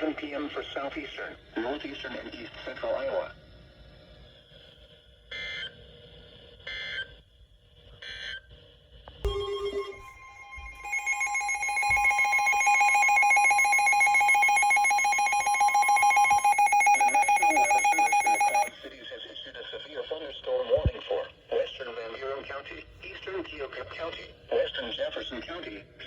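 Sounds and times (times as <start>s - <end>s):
two-tone attention signal: 9.3s - 18.7s.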